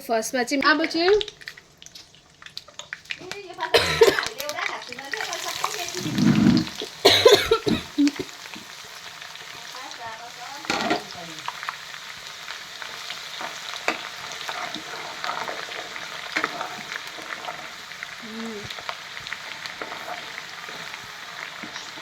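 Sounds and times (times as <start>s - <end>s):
seeds sizzling in hot oil: 0.0s - 22.0s
utensil stirring: 5.5s - 8.3s, 12.9s - 22.0s.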